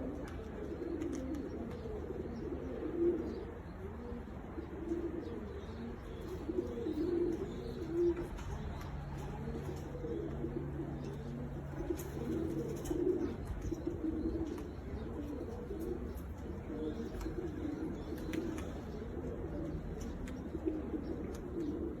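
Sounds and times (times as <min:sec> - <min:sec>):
pigeons cooing: 0:00.0 - 0:22.0.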